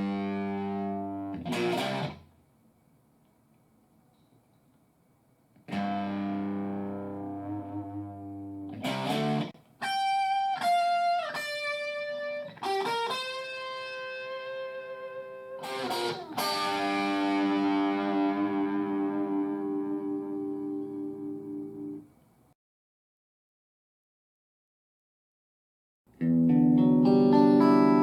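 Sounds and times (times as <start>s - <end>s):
electric guitar playing: 0.0s - 2.2s, 5.7s - 22.0s, 26.2s - 28.0s.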